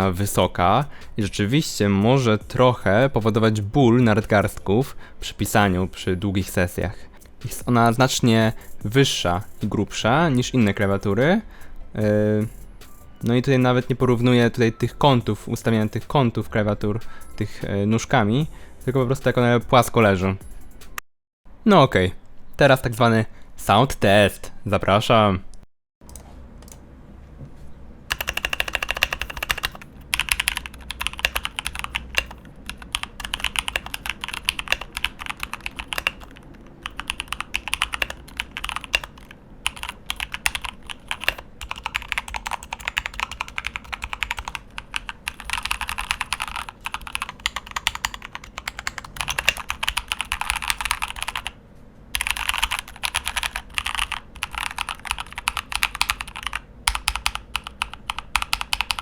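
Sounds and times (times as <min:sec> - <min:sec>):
mechanical keyboard typing: 0:28.1 - 0:51.6, 0:52.2 - 0:59.0.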